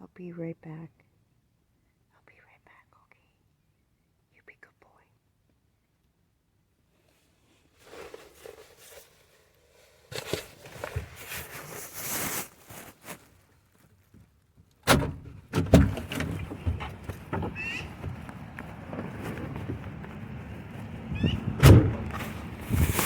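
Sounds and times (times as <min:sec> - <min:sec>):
rustling: 0:07.0 - 0:23.0
van door opening and shutting: 0:14.8 - 0:23.0
loud thuds: 0:14.9 - 0:23.0.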